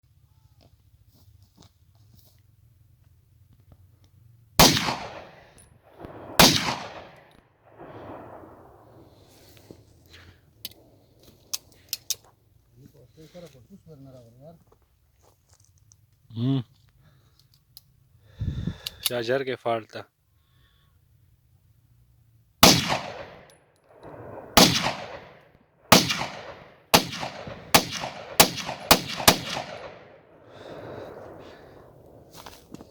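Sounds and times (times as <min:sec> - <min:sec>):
pistol shots with echo: 0:04.6 - 0:08.8, 0:22.6 - 0:31.4.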